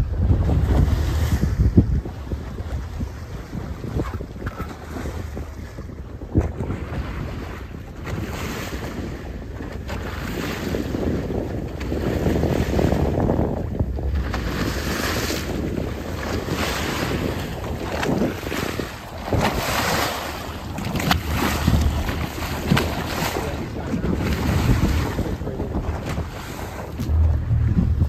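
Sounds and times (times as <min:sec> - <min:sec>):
water washing against hull: 0:00.0 - 0:28.0
wind buffeting microphone: 0:00.0 - 0:28.0
short knocks: 0:26.9 - 0:28.0.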